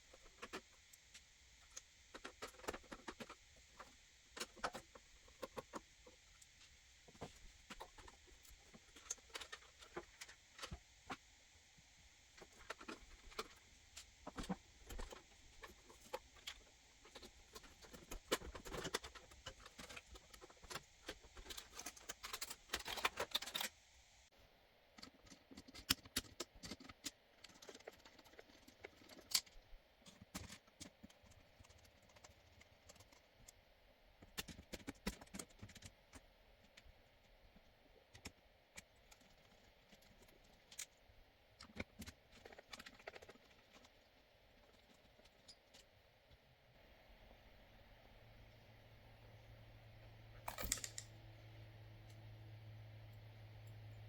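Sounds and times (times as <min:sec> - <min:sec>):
hardware clicks taps and rattles: 0:25.0 - 0:33.6, 0:50.4 - 0:51.1.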